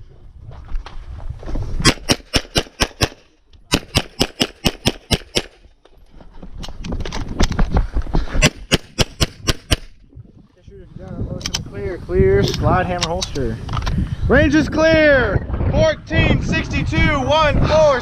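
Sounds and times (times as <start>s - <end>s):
pistol shots fired rapidly: 1.9s - 5.6s.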